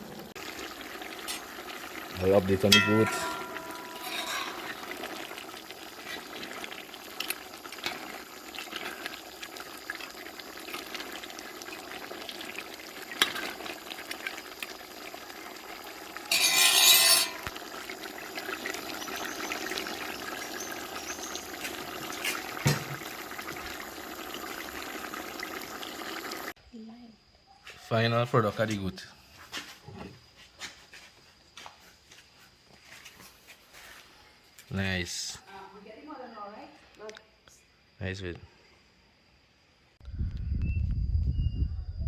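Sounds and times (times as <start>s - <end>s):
pot simmering and bubbling: 0.0s - 26.6s.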